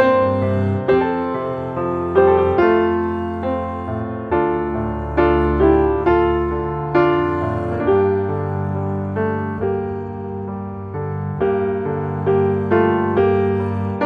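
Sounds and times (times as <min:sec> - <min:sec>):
slow piano chords: 0:00.0 - 0:14.0.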